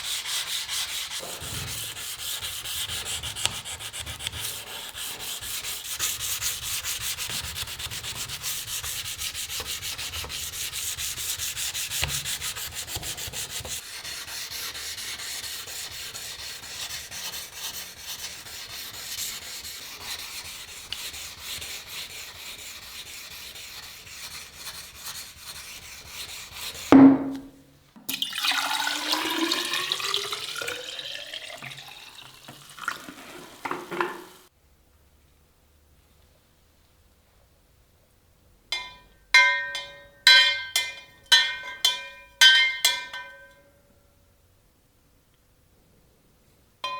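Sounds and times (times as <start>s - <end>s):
sharp knock: 26.9s - 27.6s.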